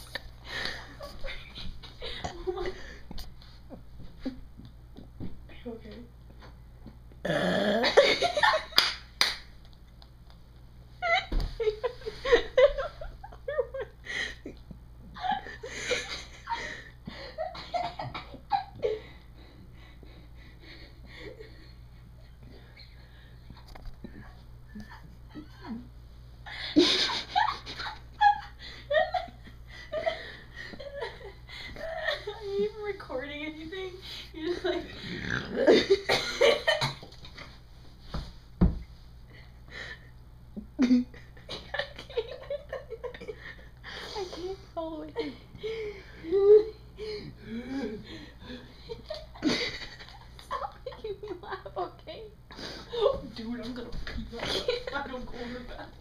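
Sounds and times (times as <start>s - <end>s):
girls laughing: 11.0s - 19.2s, 26.8s - 32.5s, 40.6s - 43.7s, 45.1s - 52.0s.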